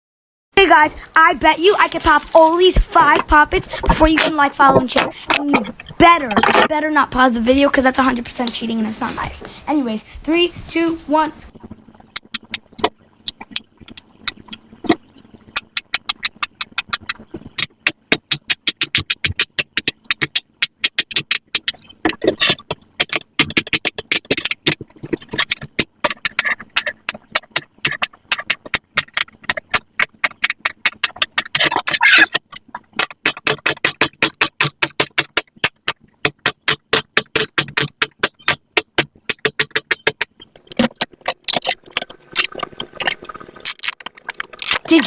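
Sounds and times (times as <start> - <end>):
fidget toy bubbles popping: 12.0 - 45.0.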